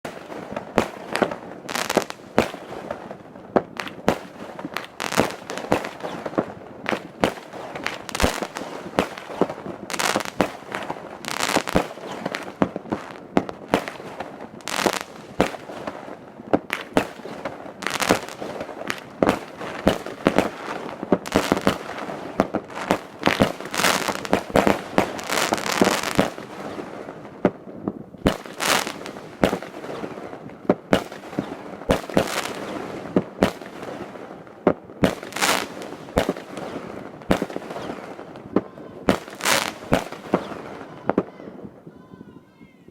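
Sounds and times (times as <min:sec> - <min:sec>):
fireworks bangs and pops: 0:00.0 - 0:41.8
fireworks crackling: 0:00.0 - 0:41.9.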